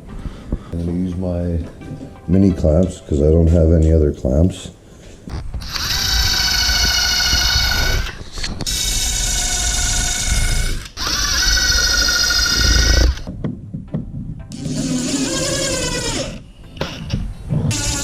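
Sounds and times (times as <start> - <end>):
power drill running: 5.6 - 13.3, 14.6 - 16.4, 17.7 - 18.0.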